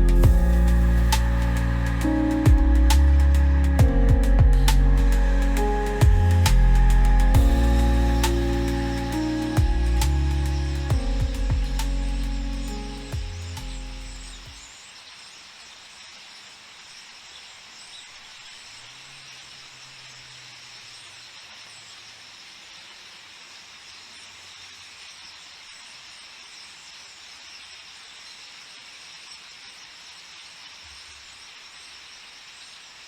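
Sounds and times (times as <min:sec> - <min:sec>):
faint low drone: 0:00.0 - 0:14.6
starlings chattering: 0:00.0 - 0:14.8.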